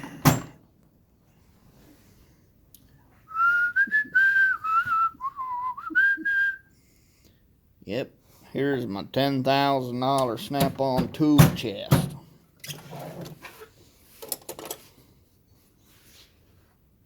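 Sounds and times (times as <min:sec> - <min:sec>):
person whistling a tune: 0:03.3 - 0:06.7.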